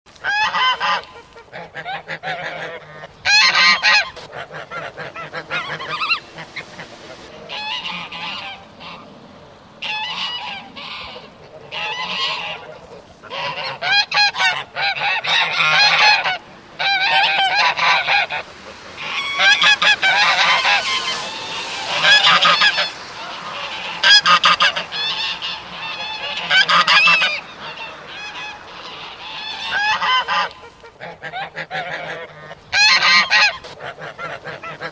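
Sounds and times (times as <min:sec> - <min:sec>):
geese honking: 0:00.2 - 0:34.9.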